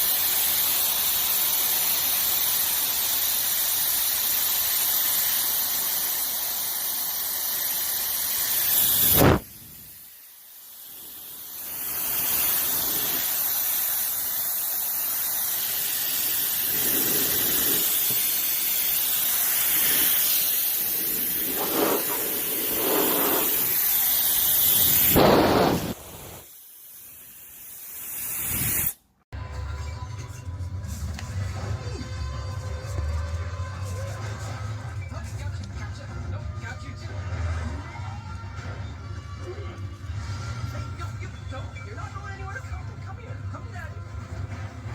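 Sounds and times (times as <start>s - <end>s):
hair dryer blowing: 0.0s - 26.5s.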